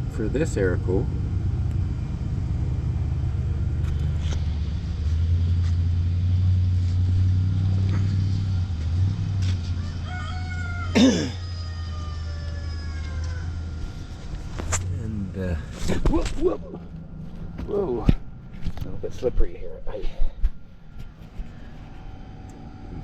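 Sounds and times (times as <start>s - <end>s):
steady low hum: 0.0s - 23.0s
rooster crowing: 9.6s - 14.4s.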